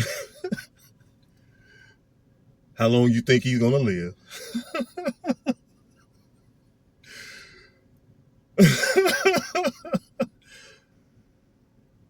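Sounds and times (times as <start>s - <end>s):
man breathing: 7.0s - 7.8s, 10.4s - 11.0s.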